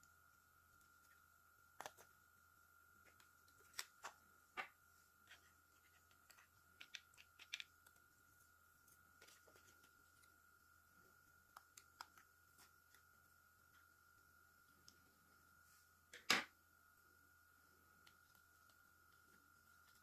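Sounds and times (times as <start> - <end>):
small plastic parts clicking: 5.9 - 8.0.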